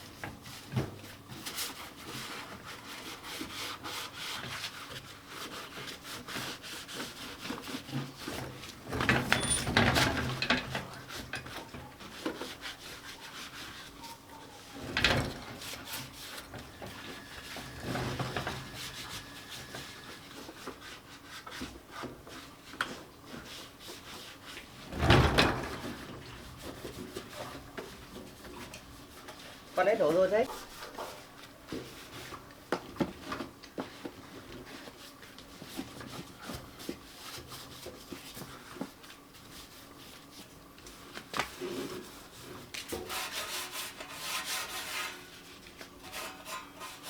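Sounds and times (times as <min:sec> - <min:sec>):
rubbing and scraping with ticks: 0:00.4 - 0:32.3, 0:34.7 - 0:47.0.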